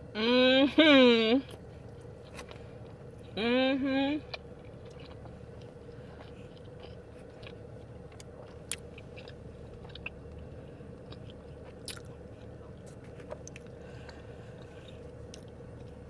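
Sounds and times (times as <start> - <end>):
chewing and biting: 4.3 - 10.4, 11.0 - 16.0.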